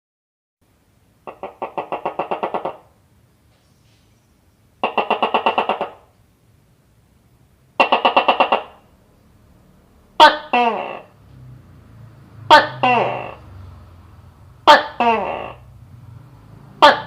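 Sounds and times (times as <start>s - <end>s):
gecko chirping rapidly: 1.3s - 2.9s.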